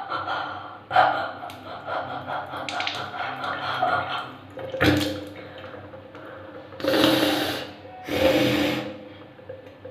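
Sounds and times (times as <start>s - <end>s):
water running and dripping: 1.5s - 7.8s.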